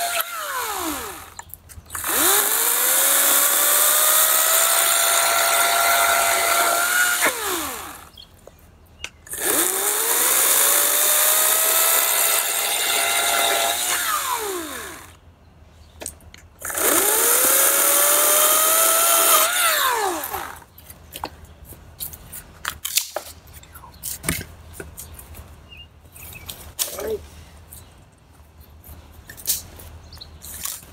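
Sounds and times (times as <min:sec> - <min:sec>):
electric chainsaw cutting log: 0:00.0 - 0:08.1, 0:09.3 - 0:15.2, 0:16.6 - 0:20.7.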